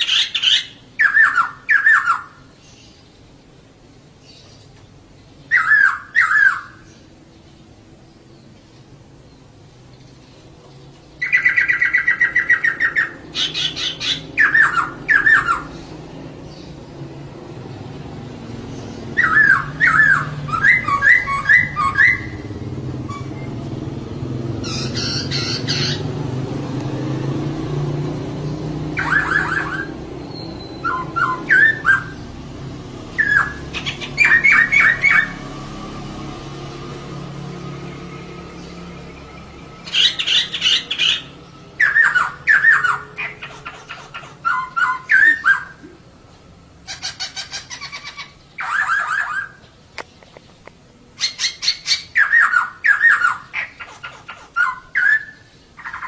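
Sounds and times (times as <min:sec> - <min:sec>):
bird chattering and trilling: 0:00.0 - 0:03.6, 0:04.2 - 0:17.0, 0:18.5 - 0:23.7, 0:24.5 - 0:26.2, 0:28.4 - 0:35.4, 0:38.6 - 0:45.9, 0:46.8 - 0:56.0.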